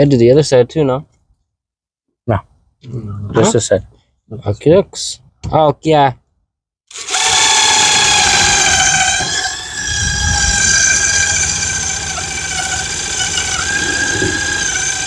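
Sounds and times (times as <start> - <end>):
power drill whining: 6.9 - 15.0.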